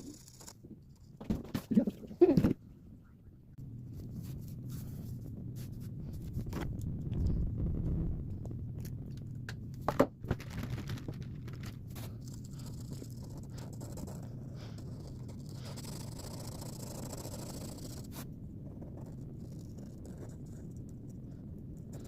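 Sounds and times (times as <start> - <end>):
pencil scratching on paper: 0.0 - 0.6, 3.9 - 6.4, 11.9 - 22.0.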